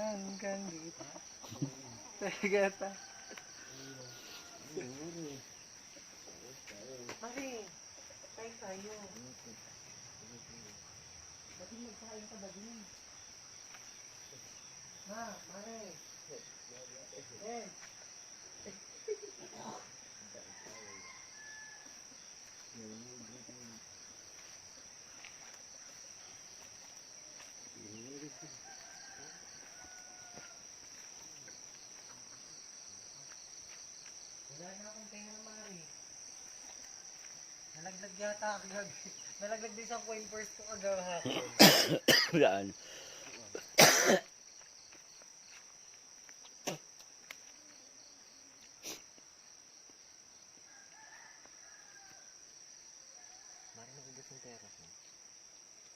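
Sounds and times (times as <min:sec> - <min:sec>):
high insect trill: 0:00.0 - 0:55.9
distant rooster crowing: 0:02.2 - 0:06.2, 0:20.2 - 0:22.5, 0:28.2 - 0:32.6, 0:50.6 - 0:54.6.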